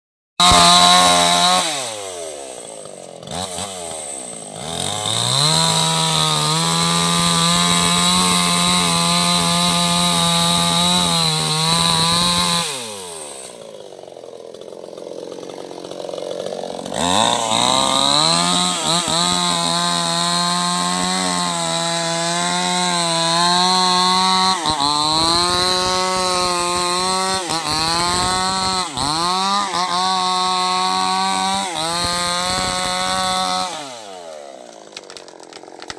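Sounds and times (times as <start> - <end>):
chainsaw cutting a tree: 0.4 - 35.9.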